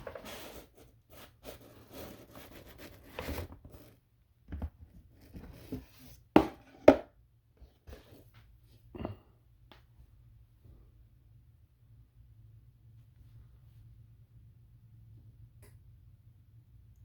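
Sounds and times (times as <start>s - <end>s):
rustling and scraping: 0.0s - 6.8s.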